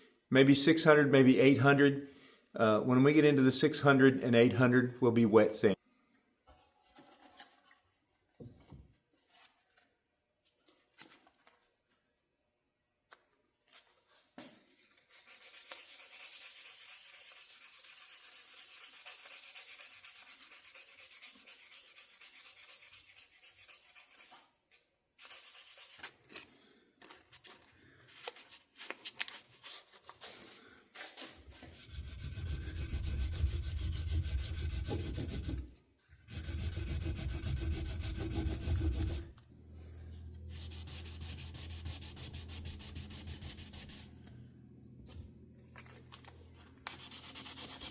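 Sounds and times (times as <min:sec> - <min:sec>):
sandpaper sanding strokes: 0:15.1 - 0:24.4, 0:25.2 - 0:26.2, 0:31.5 - 0:35.7, 0:36.3 - 0:39.3, 0:40.5 - 0:44.1, 0:46.9 - 0:47.9.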